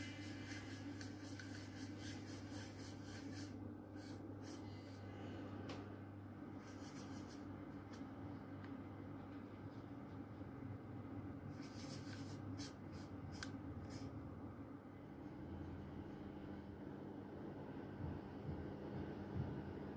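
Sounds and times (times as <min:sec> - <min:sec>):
steady low hum: 0:00.0 - 0:19.9.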